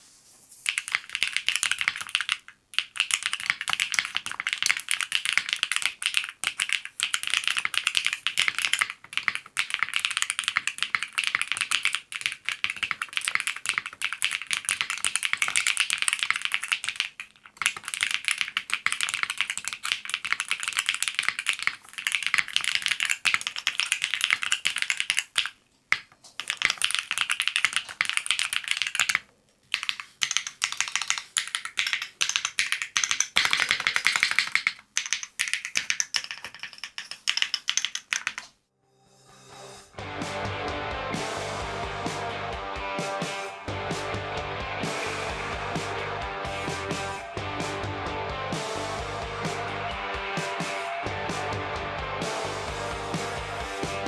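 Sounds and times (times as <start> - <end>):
fast keyboard typing: 0.6 - 38.6.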